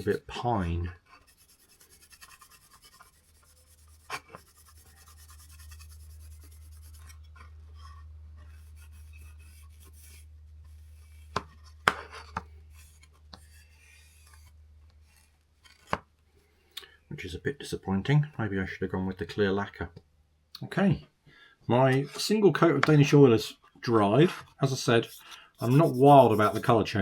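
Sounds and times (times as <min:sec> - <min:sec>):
cloth rubbing wood: 0:01.2 - 0:15.8, 0:24.3 - 0:26.8.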